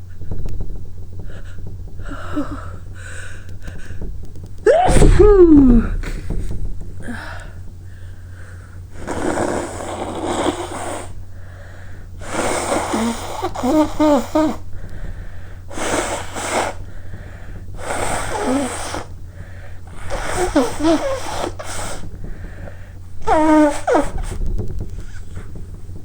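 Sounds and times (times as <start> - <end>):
low steady hum: 0.0 - 9.0
woman breathing in: 1.3 - 4.1, 7.0 - 8.8, 11.3 - 12.1
breathy rush of air: 1.3 - 8.9
woman sneezing: 4.7 - 6.2, 19.9 - 22.0, 23.2 - 24.4.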